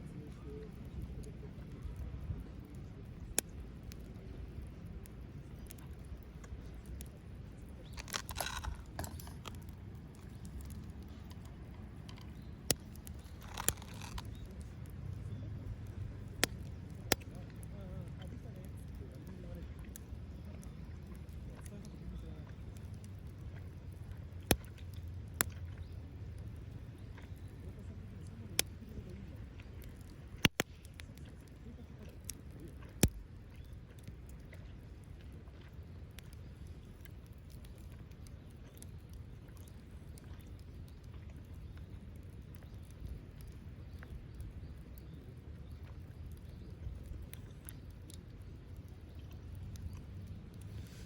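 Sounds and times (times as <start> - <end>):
wood fire crackling: 0.0 - 51.0
sharp pops from fire: 5.6 - 18.3, 22.7 - 27.5, 28.2 - 31.6, 32.2 - 34.3
sharp pops of fire: 12.1 - 15.0, 15.8 - 17.6, 30.1 - 31.2.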